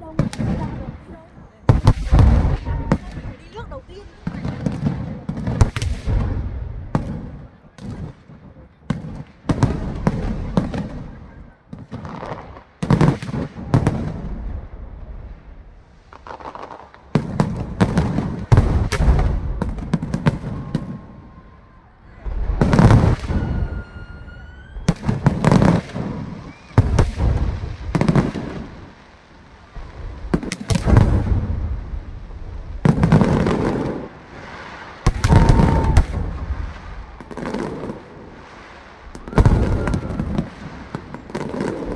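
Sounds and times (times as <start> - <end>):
fireworks booming: 0.0 - 41.9
fireworks crackling: 0.0 - 41.9
rising firework whistle: 18.8 - 29.0, 32.8 - 41.9.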